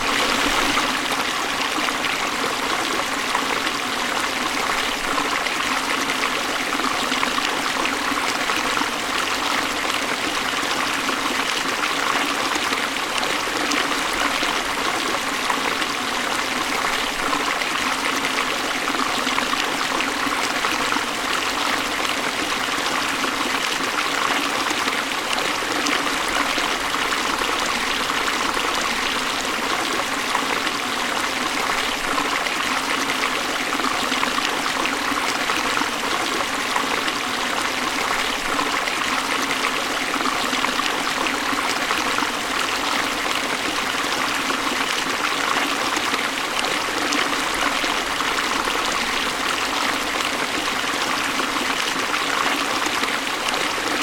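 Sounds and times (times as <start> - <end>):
waterfall rushing: 0.0 - 3.1.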